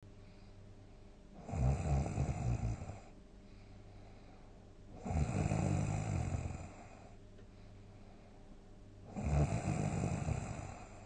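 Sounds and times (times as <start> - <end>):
person snoring loudly: 1.4 - 3.1, 5.0 - 6.8, 9.1 - 11.0.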